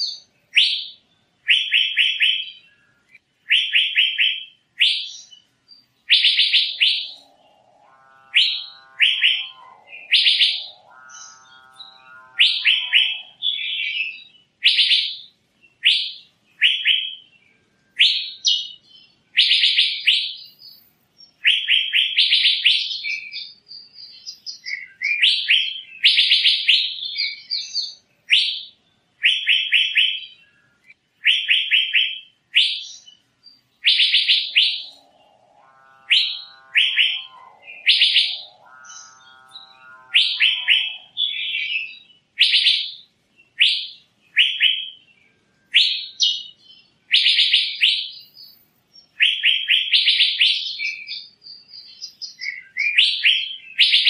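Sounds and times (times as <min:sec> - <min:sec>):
bird sharp high calls: 0:00.0 - 0:54.0
lower rough bird call: 0:06.1 - 0:17.2, 0:33.8 - 0:42.9.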